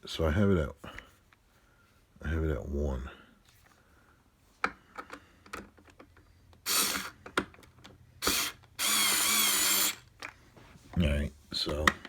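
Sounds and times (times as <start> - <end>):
cordless screwdriver motor whirring: 6.6 - 7.2, 8.2 - 10.1.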